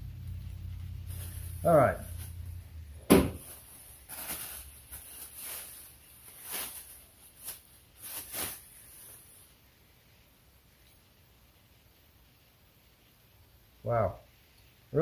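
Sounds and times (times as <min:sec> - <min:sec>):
soft scuffs and rustles: 0:01.0 - 0:02.6, 0:03.3 - 0:09.6
sharp knock: 0:03.1 - 0:03.4.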